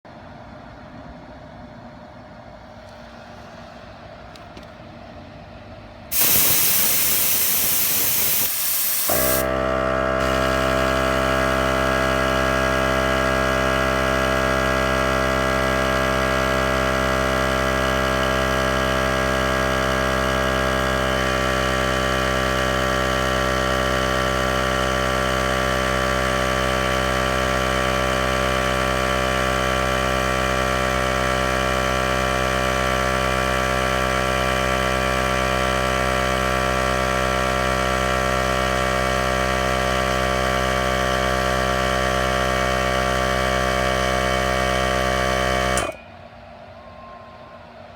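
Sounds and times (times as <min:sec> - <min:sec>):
compressed air hissing: 0:06.1 - 0:09.5
air compressor motor humming: 0:06.1 - 0:36.0, 0:36.6 - 0:46.0.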